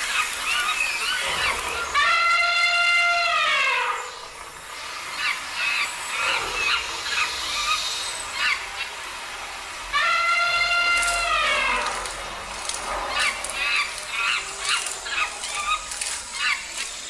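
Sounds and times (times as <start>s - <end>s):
long high falling animal call: 9.9s - 16.7s.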